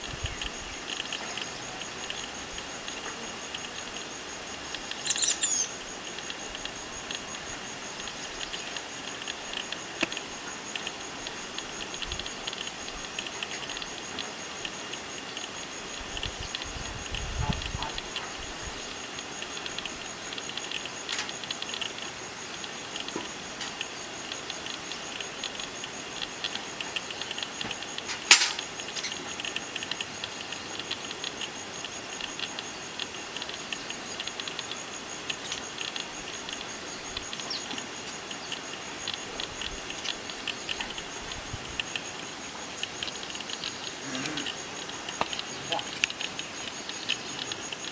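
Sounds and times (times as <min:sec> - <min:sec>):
high-pitched insect trill: 0:00.0 - 0:47.9
small clicks and chirps: 0:00.2 - 0:47.9
sharp click: 0:27.6 - 0:29.2.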